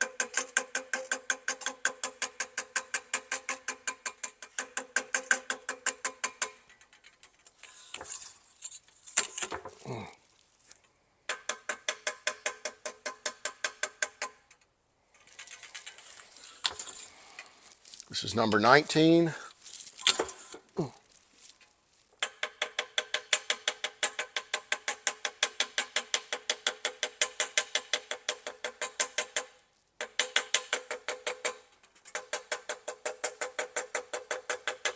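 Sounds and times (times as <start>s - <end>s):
hammer tapping on metal tube: 0.0s - 6.6s, 11.3s - 14.4s, 22.2s - 31.6s
scraping: 6.6s - 10.9s, 15.1s - 22.2s.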